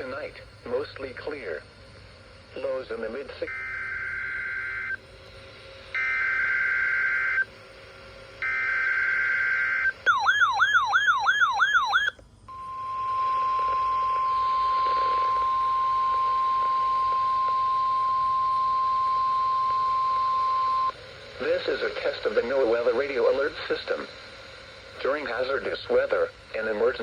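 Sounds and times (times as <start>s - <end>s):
steady warning alarm tone: 3.0s - 27.0s
fast warbling alarm: 3.5s - 5.0s, 8.4s - 20.9s
harsh digital data tones: 8.4s - 23.9s.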